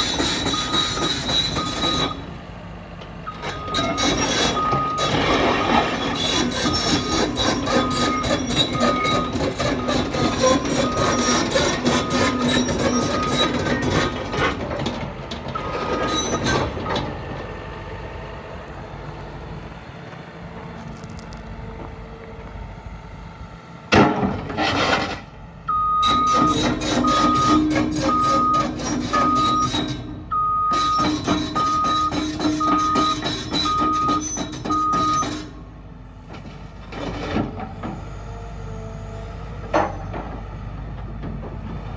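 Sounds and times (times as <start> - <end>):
excavator engine running: 0.0 - 41.9
travel alarm beeping: 25.7 - 35.5.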